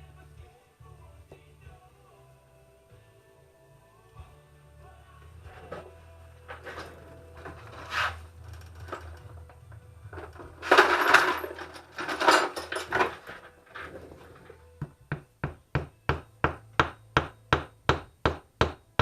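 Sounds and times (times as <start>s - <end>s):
scraping and handling noises: 5.4s - 14.8s.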